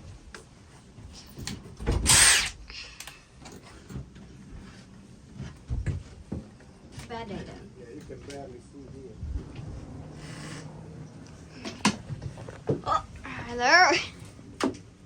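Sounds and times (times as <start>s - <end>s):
power drill burst: 2.0s - 2.6s.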